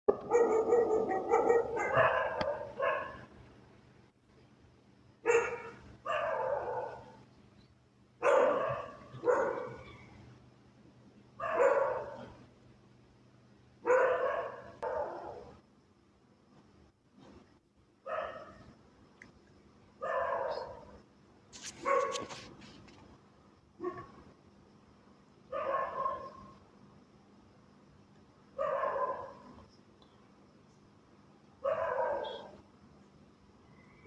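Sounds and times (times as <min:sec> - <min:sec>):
dog barking: 0:00.1 - 0:03.3, 0:05.2 - 0:07.2, 0:08.2 - 0:09.8, 0:11.4 - 0:12.4, 0:13.8 - 0:15.6, 0:18.1 - 0:18.6, 0:20.0 - 0:20.9, 0:21.8 - 0:22.3, 0:23.8 - 0:24.1, 0:25.5 - 0:26.5, 0:28.6 - 0:29.5, 0:31.6 - 0:32.6.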